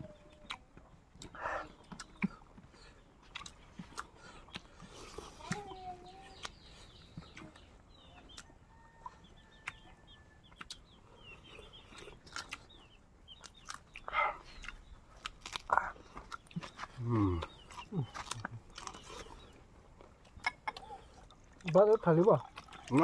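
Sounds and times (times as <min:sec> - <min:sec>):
chickens clucking and calling: 0:03.8 - 0:15.1.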